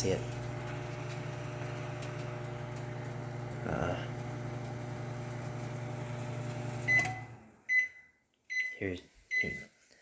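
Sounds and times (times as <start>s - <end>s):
microwave oven humming: 0.0s - 8.0s.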